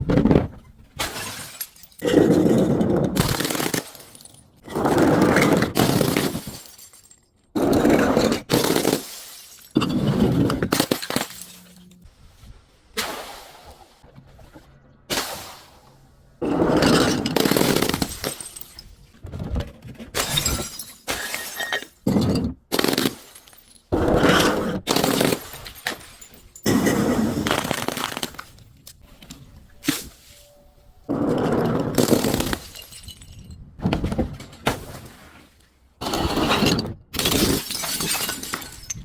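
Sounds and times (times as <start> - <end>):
glass bottles shattering: 1.0 - 12.0, 16.4 - 19.1, 20.2 - 28.6, 31.6 - 35.2, 36.6 - 39.0.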